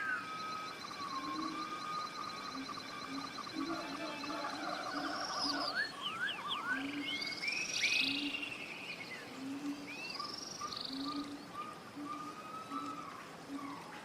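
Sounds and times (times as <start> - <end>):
forest birds singing: 0.0 - 14.0.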